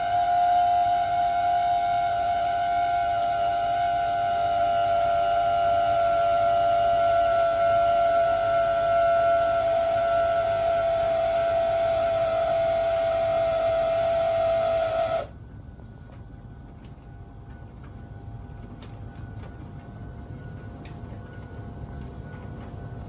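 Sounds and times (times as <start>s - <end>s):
pump whining: 0.0s - 15.4s.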